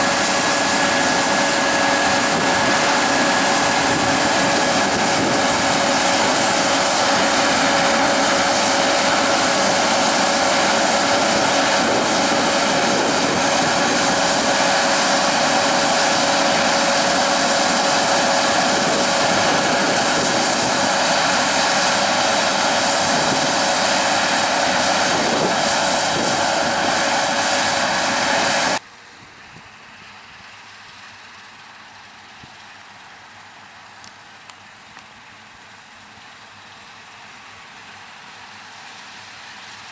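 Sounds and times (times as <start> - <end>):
machine whine: 0.0 - 28.8
harvest machinery droning: 0.0 - 28.9.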